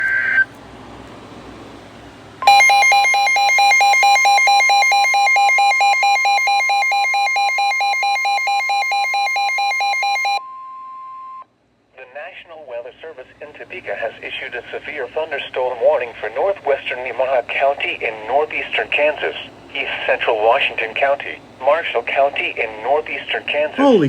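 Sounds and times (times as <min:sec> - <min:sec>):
faint radio hiss: 0:11.9 - 0:24.0.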